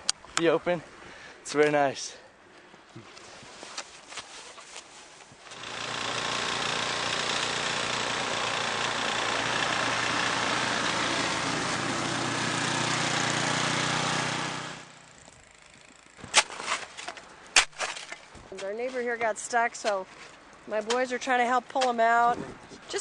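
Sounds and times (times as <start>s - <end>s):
engine running: 5.5s - 16.0s.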